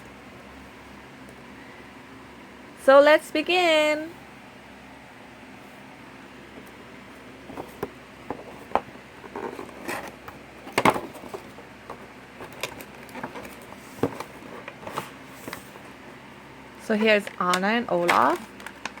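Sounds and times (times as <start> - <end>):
packaging rustling: 17.0 - 19.0.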